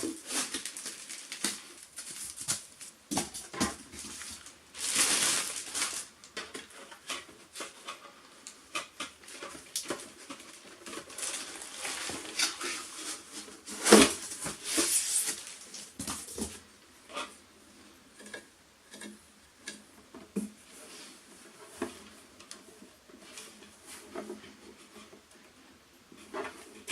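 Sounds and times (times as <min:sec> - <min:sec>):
objects being handled: 0:00.0 - 0:17.4.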